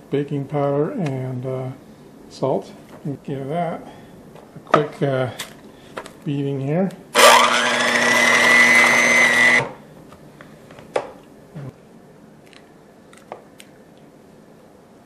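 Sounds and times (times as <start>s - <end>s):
electric mixer motor whine: 7.2s - 9.8s.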